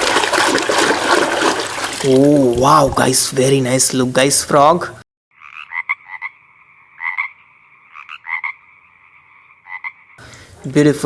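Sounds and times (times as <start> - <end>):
frog croaks: 5.3 - 10.2.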